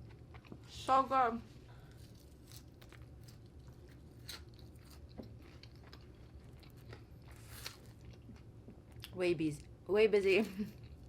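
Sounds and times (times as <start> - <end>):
person chewing food: 0.0 - 0.7, 1.9 - 9.2
low steady hum: 0.0 - 11.0.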